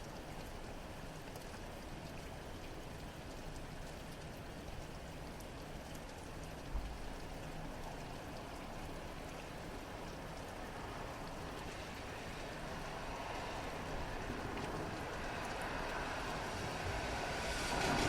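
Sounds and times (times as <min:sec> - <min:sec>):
steady rain: 0:00.0 - 0:18.0
tyres hissing on wet road: 0:10.7 - 0:18.0.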